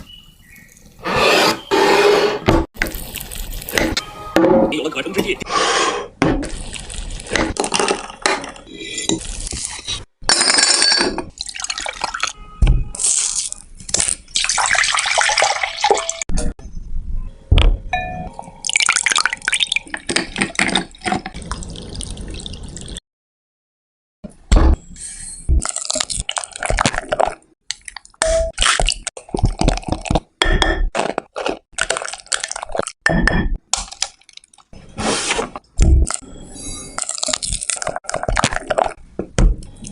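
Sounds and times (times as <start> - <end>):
liquid pouring and dripping: 18.4 - 23.0
wet squishes: 31.0 - 33.0.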